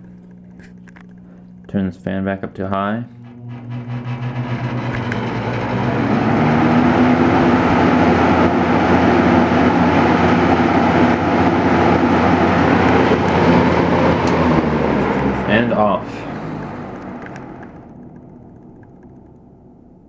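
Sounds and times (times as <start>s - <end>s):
low motor hum: 0.0s - 20.0s
fan blades rushing air: 2.8s - 18.1s.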